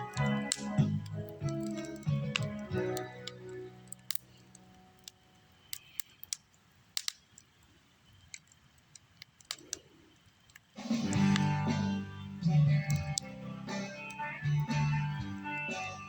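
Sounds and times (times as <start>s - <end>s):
campfire crackling: 0.0s - 16.0s
low background hiss: 0.0s - 16.0s.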